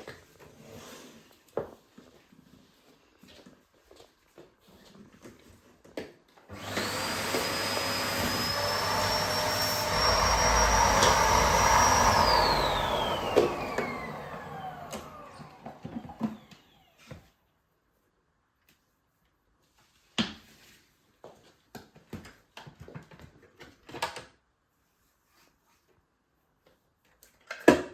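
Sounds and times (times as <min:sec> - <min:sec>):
vacuum cleaner motor whine: 0:06.5 - 0:17.3.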